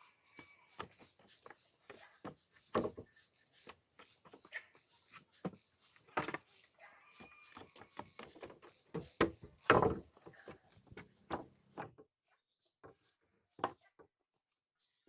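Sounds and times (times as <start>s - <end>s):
wooden beams knocking and thudding: 0.3s - 6.6s, 7.2s - 12.1s.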